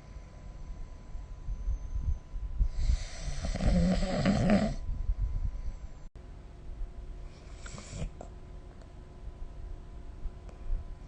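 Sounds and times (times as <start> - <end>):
person snoring: 2.8 - 4.8.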